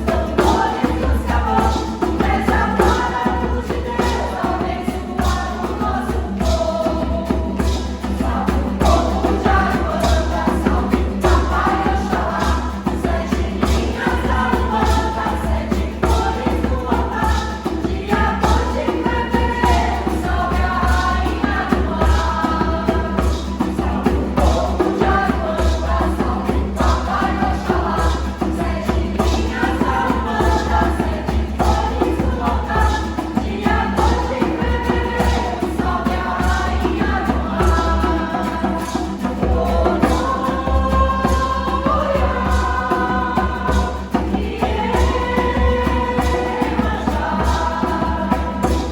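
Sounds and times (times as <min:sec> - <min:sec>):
choir singing: 0:00.0 - 0:48.9.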